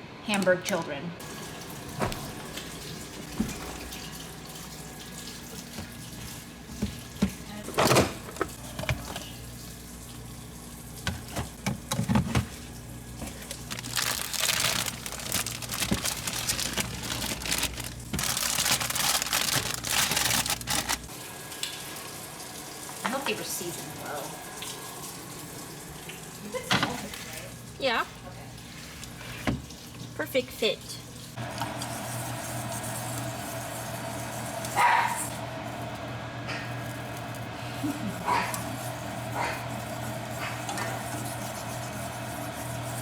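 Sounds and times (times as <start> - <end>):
kitchen knocks and clatters: 5.5 - 9.4, 11.0 - 12.6, 26.6 - 27.3.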